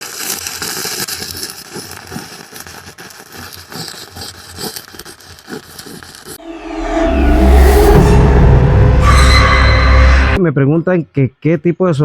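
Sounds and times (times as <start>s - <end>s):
welding arc crackling sizzle: 0.0s - 2.0s.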